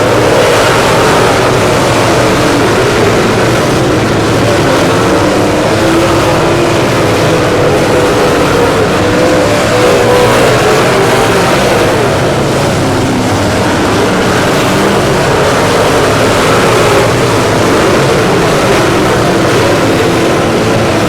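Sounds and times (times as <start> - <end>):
race car engines running hard: 0.0 - 21.0.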